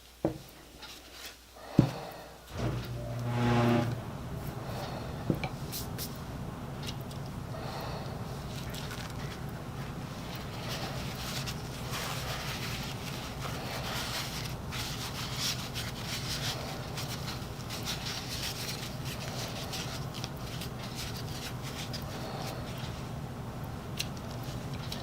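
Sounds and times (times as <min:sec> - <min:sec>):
steady low hum: 0:01.9 - 0:25.0
rubbing and scraping: 0:02.5 - 0:04.8.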